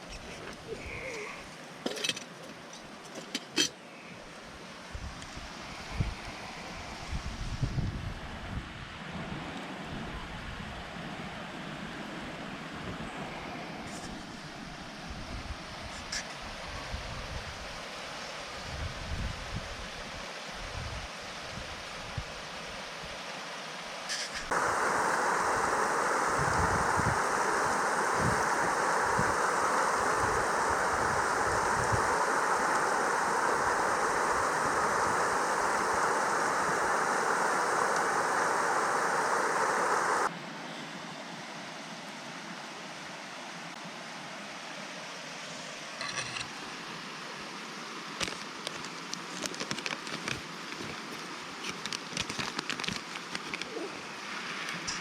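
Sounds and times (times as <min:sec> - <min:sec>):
mountain stream rushing: 0:20.0 - 0:55.0.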